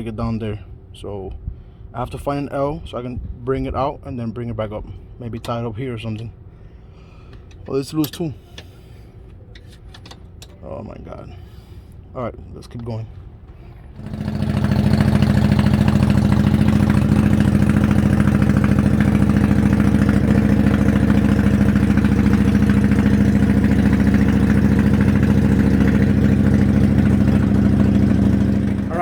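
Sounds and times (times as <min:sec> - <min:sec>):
vehicle engine running: 0:12.8 - 0:29.0.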